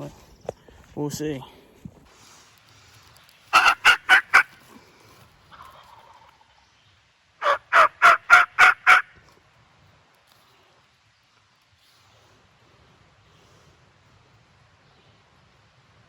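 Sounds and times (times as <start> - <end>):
turkey yelping: 3.5 - 4.6, 7.4 - 9.1.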